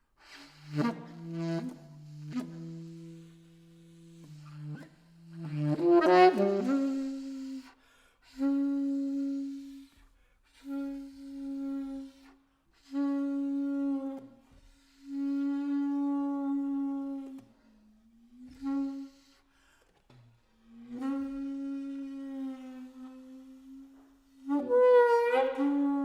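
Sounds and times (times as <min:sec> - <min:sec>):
solo saxophone: 0:00.0 - 0:26.0.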